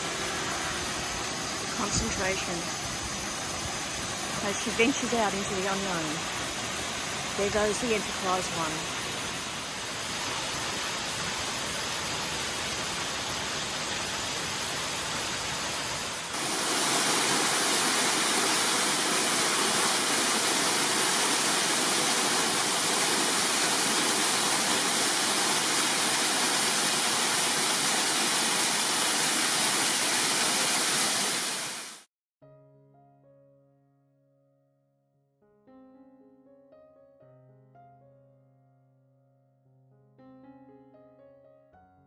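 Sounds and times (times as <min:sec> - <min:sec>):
waterfall rushing: 0:00.0 - 0:32.0.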